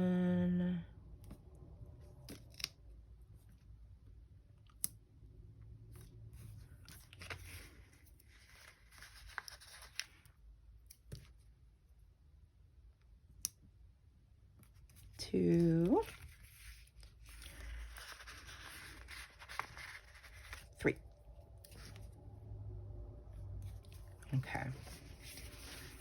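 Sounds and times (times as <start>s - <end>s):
paper rustling and peeling: 5.9s - 10.4s, 14.6s - 22.1s, 23.7s - 26.0s.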